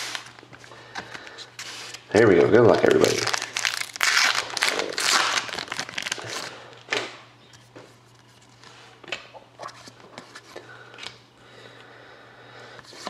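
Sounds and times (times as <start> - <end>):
foil wrapper crinkling and tearing: 0.0 - 0.4, 2.6 - 6.6.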